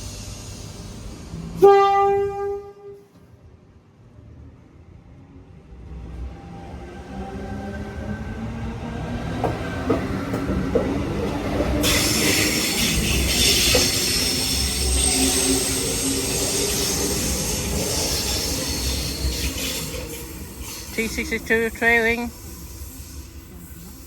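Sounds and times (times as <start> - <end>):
electric train rumbling: 0.0 - 24.0
high squealing brake hiss: 11.8 - 24.0.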